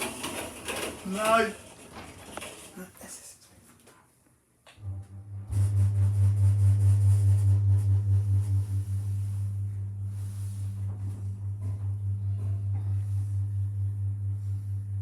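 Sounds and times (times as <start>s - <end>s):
lift machinery humming: 4.8s - 15.0s.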